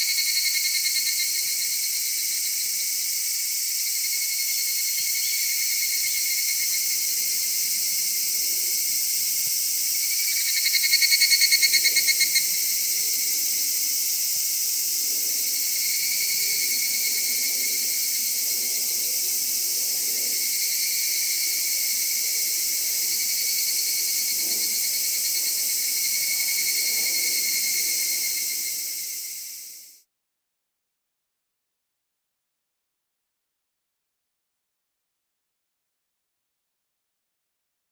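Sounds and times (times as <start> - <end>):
insect chorus: 0.0 - 30.1
rapidly pulsed insect call: 0.0 - 30.1.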